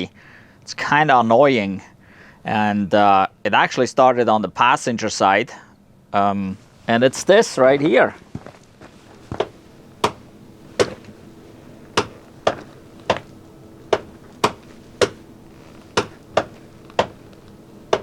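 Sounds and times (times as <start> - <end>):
car door check strap popping: 9.4 - 10.2, 10.8 - 11.2, 11.9 - 18.0.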